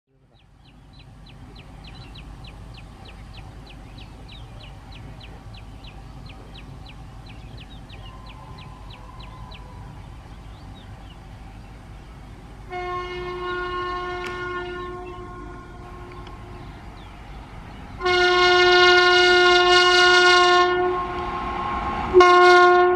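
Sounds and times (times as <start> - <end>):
bird chirping: 0.1 - 18.4
passing train rumble: 0.1 - 22.9
locomotive horn blast: 12.6 - 17.2, 17.9 - 22.9.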